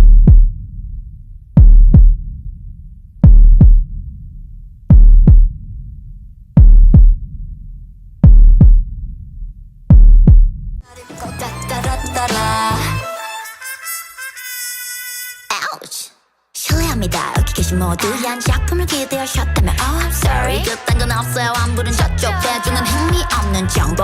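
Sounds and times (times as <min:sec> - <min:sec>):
drum machine bass kicks: 0:00.0 - 0:02.6, 0:03.2 - 0:04.3, 0:04.9 - 0:06.0, 0:06.6 - 0:12.3, 0:16.7 - 0:17.8, 0:18.5 - 0:18.8, 0:19.6 - 0:21.3, 0:22.0 - 0:24.0
low rumble: 0:00.0 - 0:10.8.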